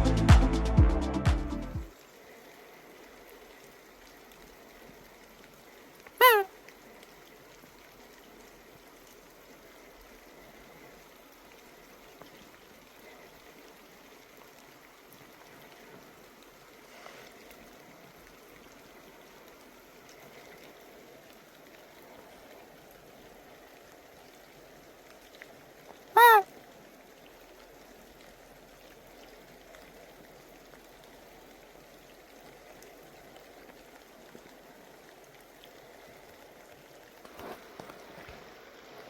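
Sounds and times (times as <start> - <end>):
short call falling in pitch: 6.2 - 6.5, 26.2 - 26.5.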